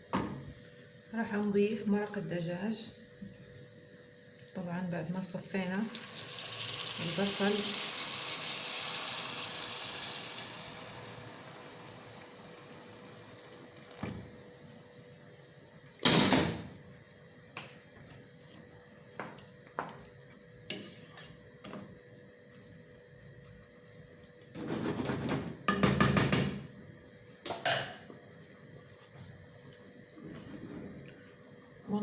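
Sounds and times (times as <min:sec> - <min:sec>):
rice and onions sizzling in a pot: 0:02.9 - 0:18.1, 0:19.2 - 0:23.4.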